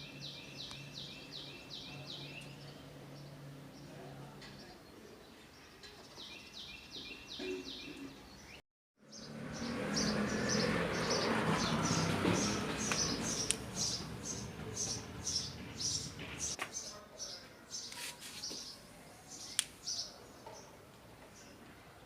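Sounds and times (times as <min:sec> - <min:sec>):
small birds chirping: 0:00.0 - 0:21.7
outdoor noise hiss: 0:12.8 - 0:22.0.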